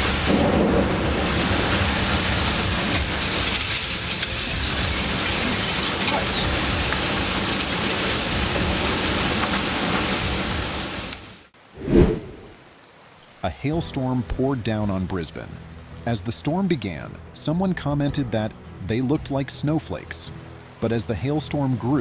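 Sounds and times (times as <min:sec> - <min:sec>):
heavy rain pouring: 0:00.0 - 0:15.9
low rumble: 0:11.8 - 0:12.6
strong wind: 0:11.8 - 0:12.6.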